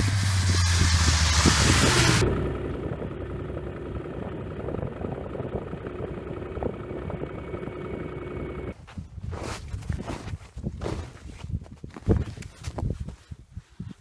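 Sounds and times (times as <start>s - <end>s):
vehicle engine droning: 0.0s - 8.8s.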